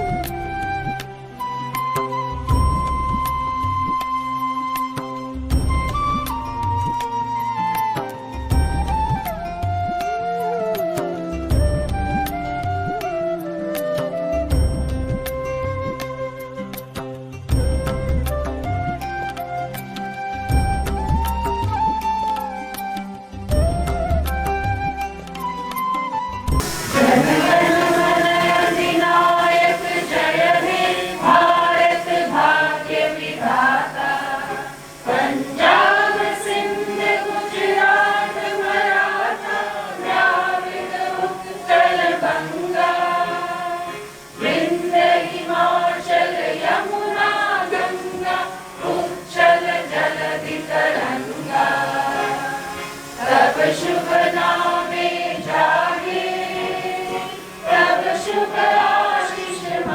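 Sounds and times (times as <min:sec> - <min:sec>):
choir singing: 0:26.6 - 0:59.9.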